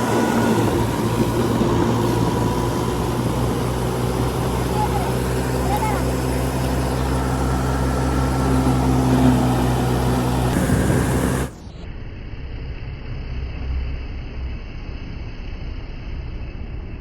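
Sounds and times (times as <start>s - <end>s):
machinery clatter: 0.0s - 11.7s
even rushing noise: 0.0s - 12.4s
diesel engine running: 0.0s - 17.0s.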